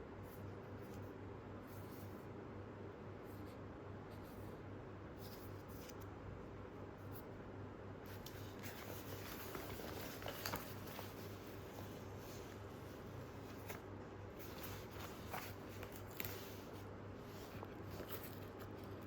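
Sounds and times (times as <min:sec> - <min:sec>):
low steady hum: 0:00.0 - 0:19.0
nylon bag rustling and tapping: 0:08.7 - 0:11.9.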